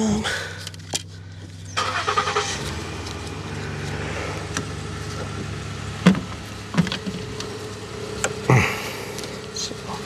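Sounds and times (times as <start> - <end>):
car engine idling: 0.0 - 10.0
dull knocks: 4.5 - 7.6.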